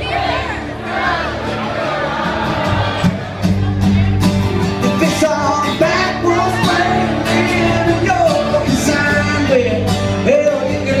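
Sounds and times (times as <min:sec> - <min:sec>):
country band playing: 0:00.0 - 0:11.0
person singing: 0:04.8 - 0:11.0.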